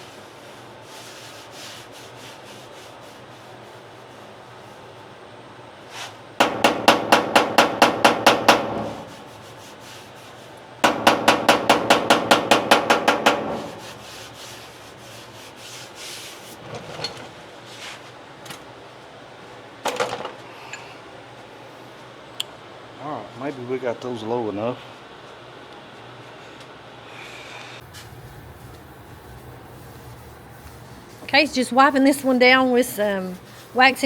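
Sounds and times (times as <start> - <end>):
hammer knocks: 6.4 - 9.0, 10.8 - 13.8
hammer tapping on steel: 6.4 - 9.0, 10.8 - 13.8.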